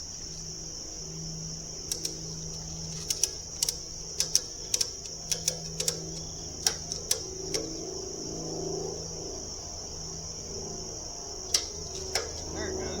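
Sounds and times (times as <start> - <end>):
crickets chirping: 0.0 - 13.0
ratchet strap clicking: 1.9 - 8.0, 11.5 - 12.6.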